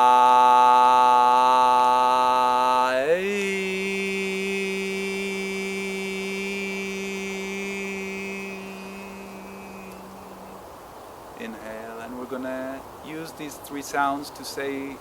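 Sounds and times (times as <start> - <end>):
man chanting a sustained tone: 0.0 - 10.6.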